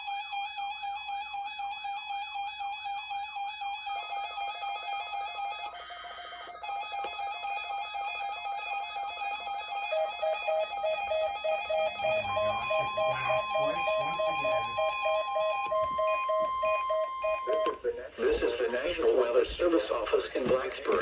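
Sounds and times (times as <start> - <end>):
electronic alarms warbling: 1.7 - 17.8
steady beep tone: 4.0 - 17.9
low tone beeping: 5.6 - 17.8.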